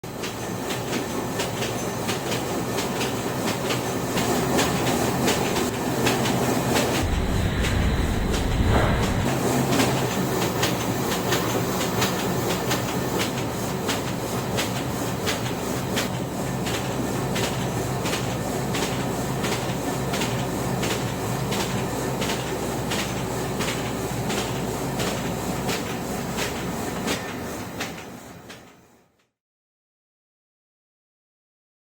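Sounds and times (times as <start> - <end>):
machine running: 6.8 - 9.4
low rumble: 7.0 - 9.3.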